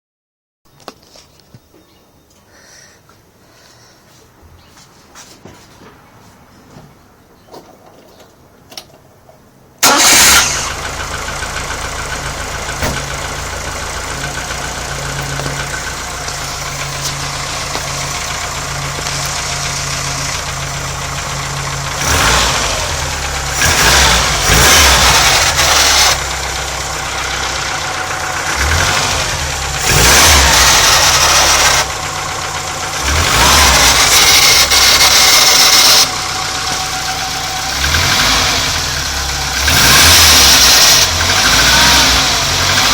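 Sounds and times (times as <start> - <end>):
car engine idling and revving: 9.8 - 42.9
car engine starting: 9.8 - 42.9.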